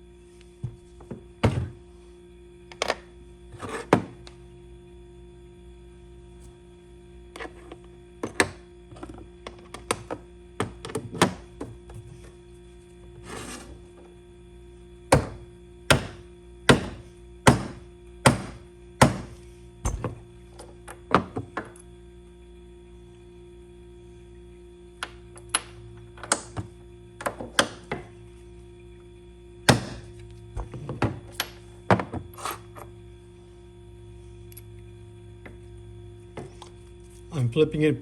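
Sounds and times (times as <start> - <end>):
mallet striking hand tool: 15.1 - 19.3.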